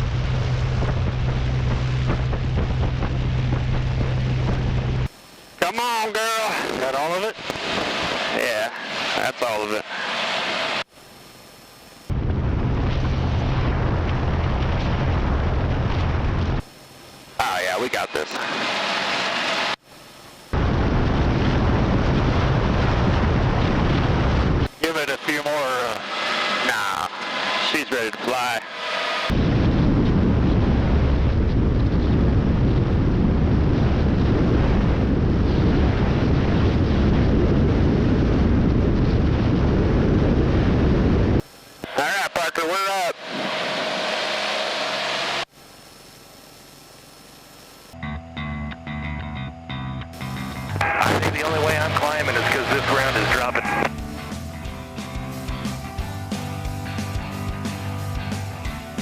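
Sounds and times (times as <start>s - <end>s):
airplane piston engine rumble: 0.0s - 5.6s, 23.5s - 32.7s, 43.2s - 59.0s.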